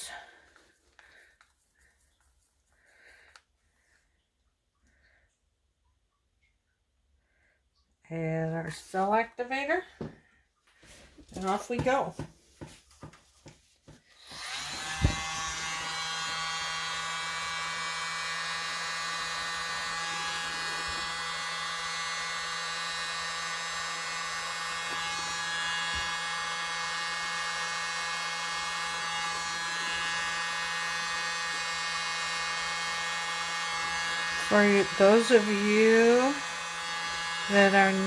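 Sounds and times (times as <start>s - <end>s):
mini blower high whine: 14.1s - 38.0s.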